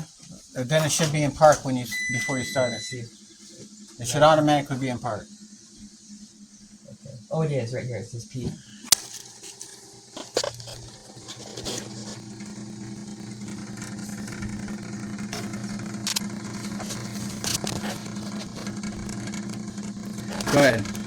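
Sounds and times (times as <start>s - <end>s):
vehicle engine humming: 0.2s - 21.0s
sharp clicks: 15.3s - 21.0s.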